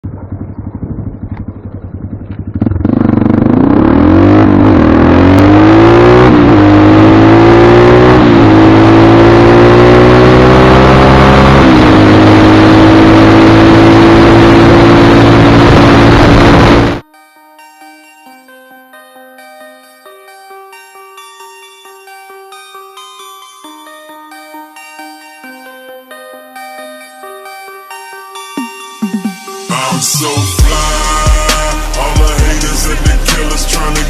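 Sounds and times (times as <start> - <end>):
motorcycle engine revving: 0.0 - 17.0.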